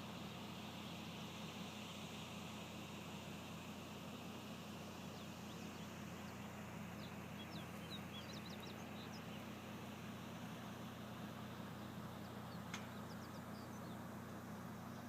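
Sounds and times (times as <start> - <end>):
faint hiss: 0.0 - 15.0
steady low hum: 0.0 - 15.0
small birds chirping: 4.6 - 15.0.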